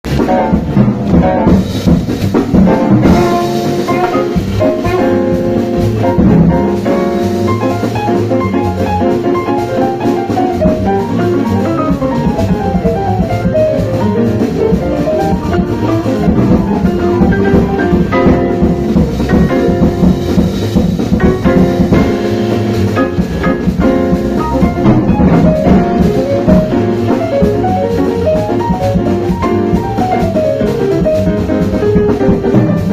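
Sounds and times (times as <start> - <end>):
drum kit: 0.0 - 32.9
saxophone line: 3.0 - 9.1.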